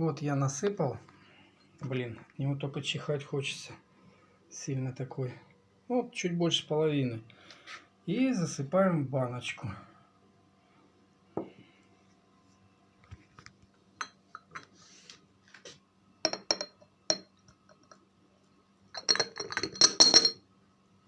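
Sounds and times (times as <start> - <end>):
glass clinking against glass jar: 14.0 - 14.7, 16.2 - 18.0, 19.0 - 20.4.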